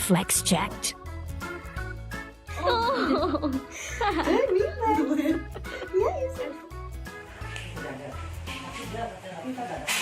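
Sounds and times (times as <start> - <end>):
background music with bass line: 0.0 - 9.0.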